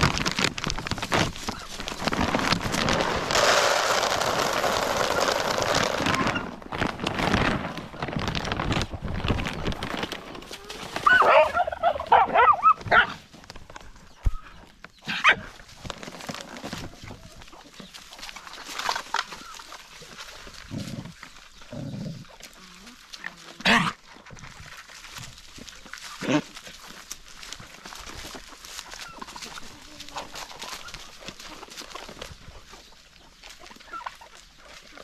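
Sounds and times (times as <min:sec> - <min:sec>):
dogs yelping and whining: 0:10.7 - 0:13.2.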